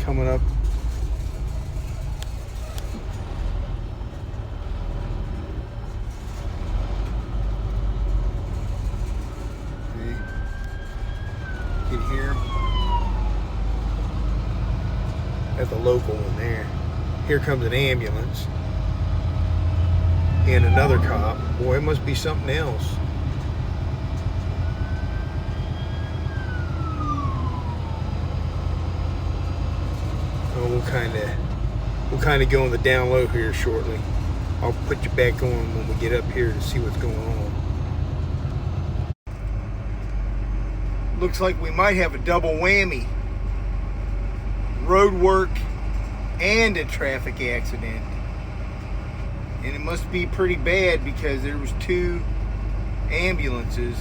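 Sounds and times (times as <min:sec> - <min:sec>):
distant police siren wailing: 0:00.0 - 0:37.8
truck diesel engine rumble: 0:00.0 - 0:54.0.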